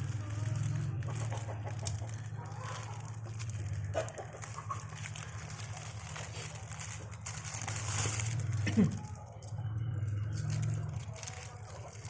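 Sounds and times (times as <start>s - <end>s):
chickens clucking: 0.0s - 6.2s.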